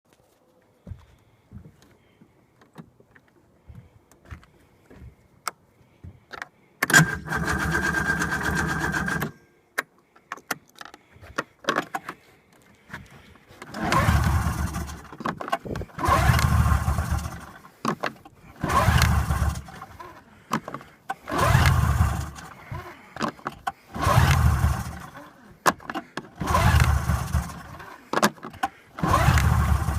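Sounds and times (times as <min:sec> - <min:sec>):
engine cranking on starter: 0:06.8 - 0:09.4, 0:13.6 - 0:29.9.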